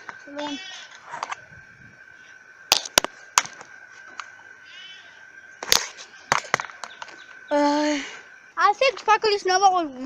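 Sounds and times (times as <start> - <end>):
faint high hum: 0.0 - 10.0
sharp cracks and knocks: 2.7 - 4.3, 5.6 - 7.3.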